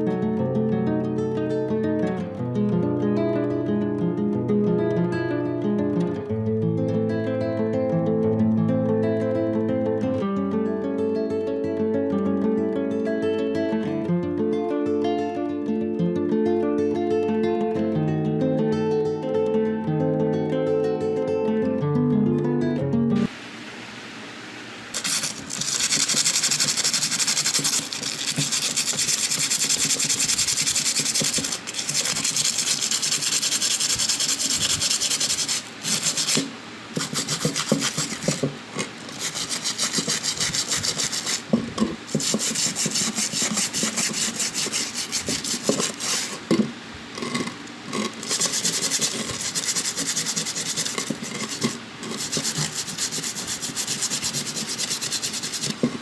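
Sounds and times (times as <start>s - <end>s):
abrasive rubbing: 25.0s - 56.0s.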